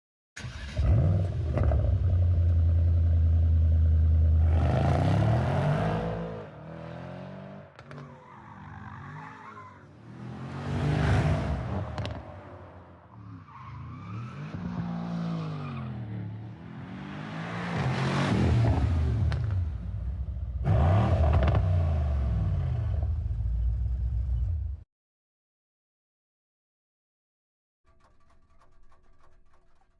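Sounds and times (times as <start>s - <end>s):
car engine revving: 0.4s - 8.0s, 10.0s - 24.5s.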